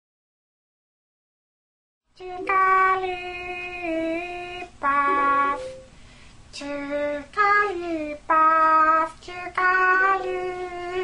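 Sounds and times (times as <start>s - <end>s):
woman singing slow held notes: 2.2s - 5.9s, 6.6s - 11.0s.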